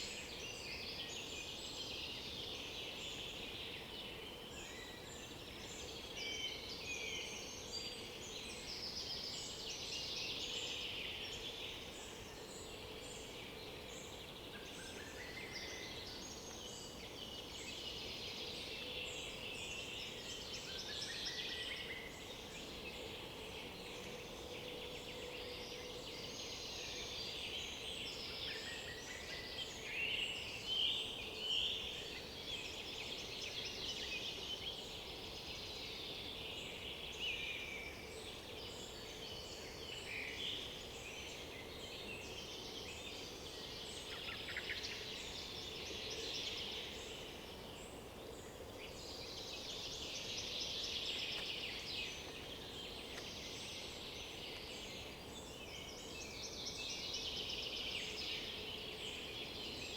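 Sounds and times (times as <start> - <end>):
songbirds singing: 0.0 - 59.9.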